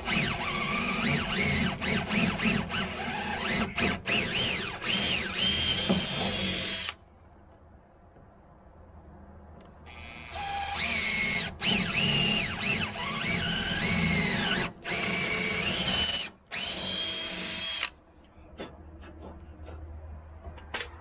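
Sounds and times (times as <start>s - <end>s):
power drill boring through aluminum: 0.0s - 7.0s, 9.9s - 17.9s.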